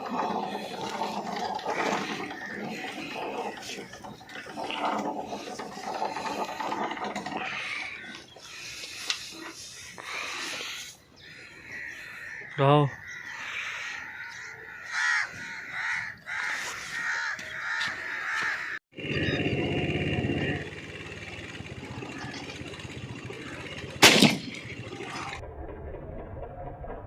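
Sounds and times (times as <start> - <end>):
birds cawing: 0.0 - 19.6, 20.3 - 25.4
shotgun shot: 24.0 - 24.6.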